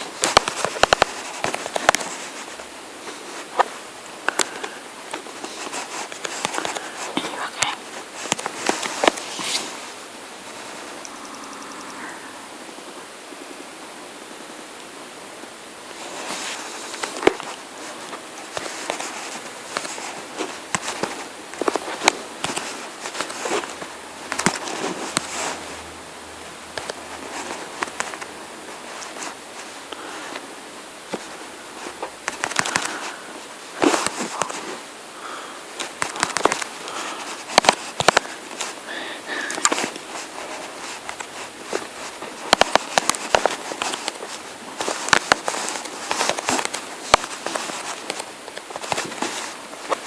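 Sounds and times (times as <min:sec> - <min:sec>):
steady hiss: 0:00.0 - 0:50.0
sharp clicks and crackles: 0:00.2 - 0:02.6, 0:16.9 - 0:25.8, 0:31.1 - 0:33.1, 0:35.8 - 0:38.8, 0:39.4 - 0:50.0.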